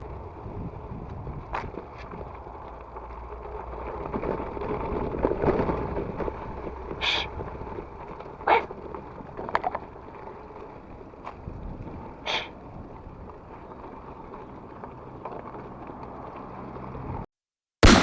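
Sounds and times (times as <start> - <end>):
bike tyres rumbling on rough ground: 0.0 - 17.3
bike knocks and rattles: 7.5 - 10.0.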